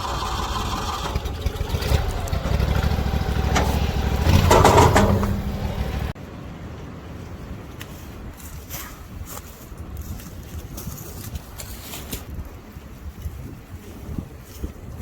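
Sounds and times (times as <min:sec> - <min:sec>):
engine rumbling: 0:00.0 - 0:06.9.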